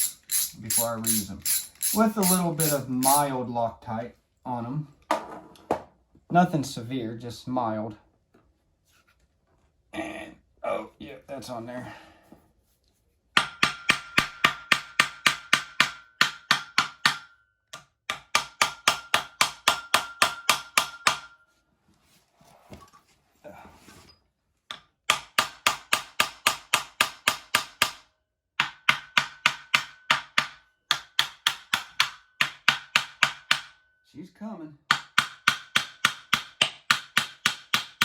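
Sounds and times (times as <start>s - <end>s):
hammer tapping on metal: 0.0s - 3.3s, 13.4s - 21.4s, 28.6s - 33.8s.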